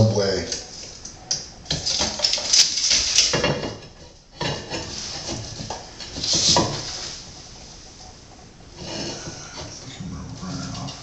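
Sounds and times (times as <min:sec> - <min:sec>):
rasping scrapes: 0:08.8 - 0:11.0.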